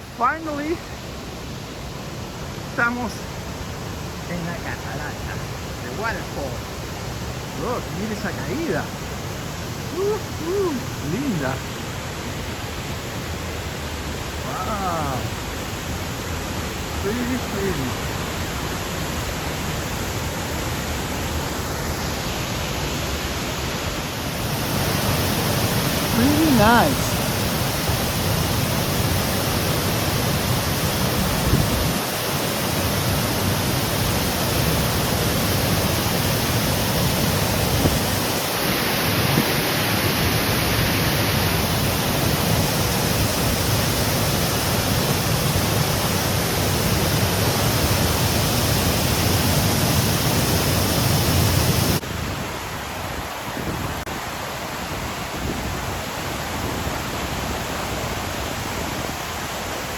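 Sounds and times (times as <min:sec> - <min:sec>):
waterfall rushing water: 0:00.0 - 0:59.9.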